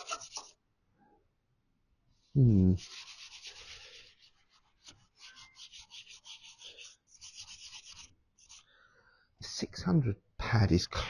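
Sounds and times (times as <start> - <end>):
hand sanding metal panel: 2.8 - 8.6.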